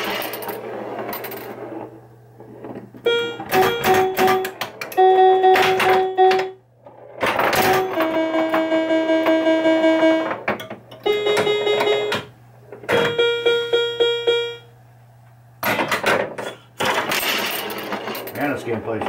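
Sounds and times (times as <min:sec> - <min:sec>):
pinball ball clatter: 0:00.0 - 0:13.2, 0:15.6 - 0:19.0
pinball electronic tones: 0:00.0 - 0:14.8.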